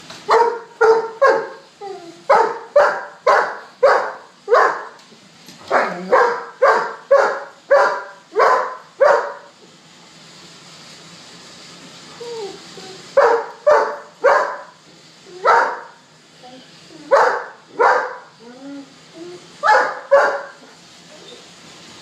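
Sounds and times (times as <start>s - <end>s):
dog barking: 0.3s - 1.6s, 2.3s - 5.0s, 5.7s - 9.5s, 13.2s - 14.8s, 15.4s - 16.0s, 17.1s - 18.3s, 19.6s - 20.6s.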